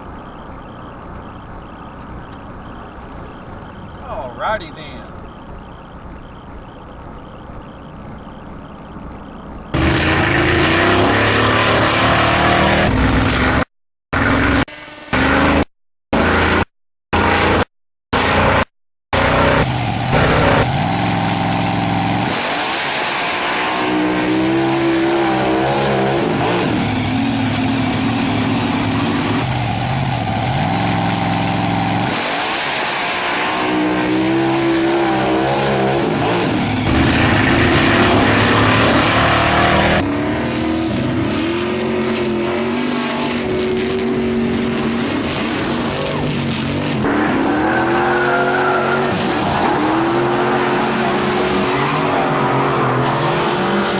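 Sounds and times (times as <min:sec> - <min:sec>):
car engines revving: 0:00.0 - 0:53.9
tyre squeals: 0:46.9 - 0:53.9.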